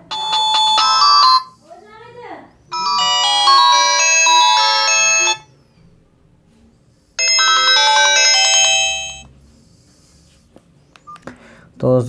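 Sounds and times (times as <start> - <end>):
phone ringtone melody: 0.0 - 1.6, 2.7 - 5.5, 7.2 - 9.3.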